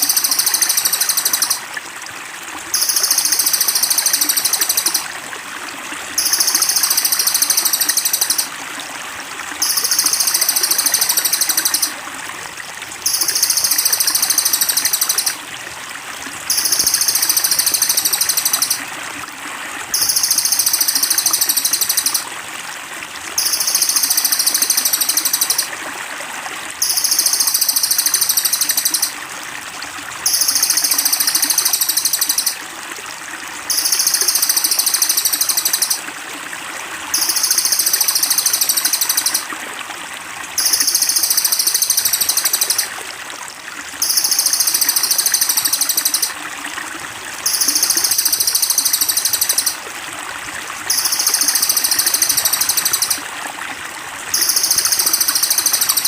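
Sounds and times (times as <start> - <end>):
trickle of running water: 0.0 - 56.0
songbird high trill: 6.2 - 8.5.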